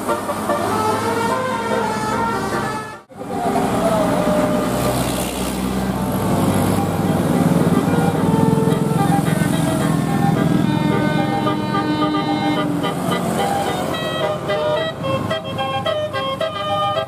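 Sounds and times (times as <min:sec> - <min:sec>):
multi-tone air horn melody: 0:00.0 - 0:03.1, 0:06.7 - 0:17.0
bus engine running: 0:00.0 - 0:17.0.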